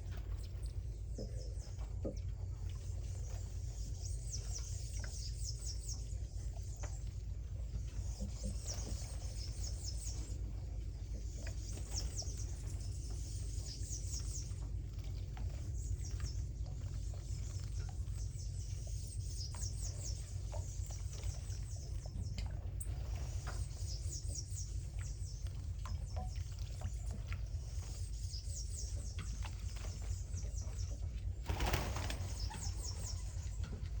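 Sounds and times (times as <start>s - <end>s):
birds singing high trills: 27.7s - 33.6s
wings flapping: 31.4s - 33.0s.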